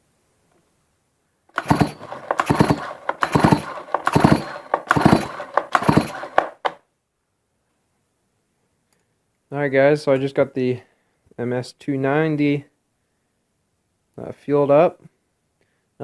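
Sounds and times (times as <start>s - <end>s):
chainsaw recoil starter pulls: 1.5s - 6.8s
engine cranking over: 1.5s - 6.8s.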